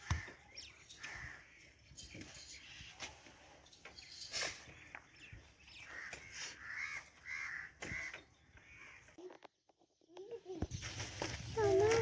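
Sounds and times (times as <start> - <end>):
bird harsh calls: 0.0 - 9.2.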